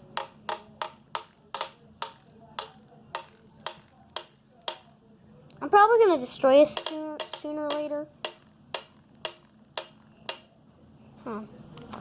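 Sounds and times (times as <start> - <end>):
phone tapping on hard surface: 0.0 - 4.9, 6.8 - 10.5.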